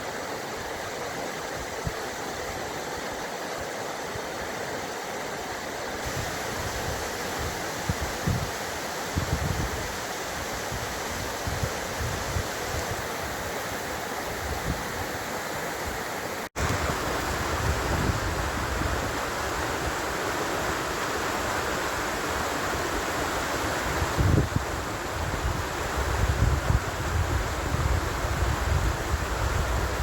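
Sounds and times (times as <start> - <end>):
running water rushing: 0.0 - 30.0
wind buffeting microphone: 6.0 - 13.5, 16.6 - 21.0, 22.6 - 30.0.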